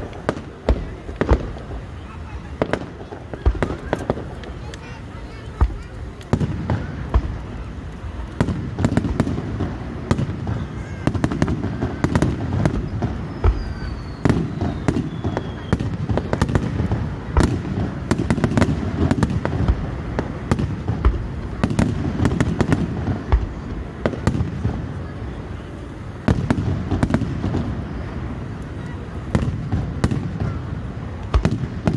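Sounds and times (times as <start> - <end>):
fireworks bangs and crackles: 0.0 - 31.9
firework whistle falling: 12.8 - 16.0.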